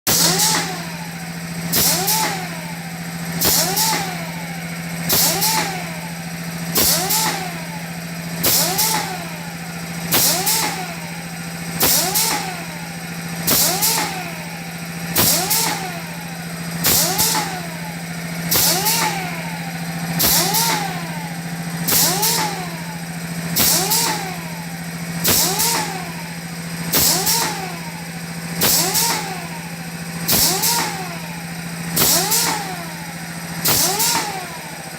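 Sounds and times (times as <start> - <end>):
filling machine hiss: 0.1 - 4.2, 4.8 - 7.4, 8.4 - 9.1, 18.4 - 19.2, 20.1 - 27.6, 28.5 - 29.3, 33.6 - 34.4
machine whine: 0.1 - 34.9.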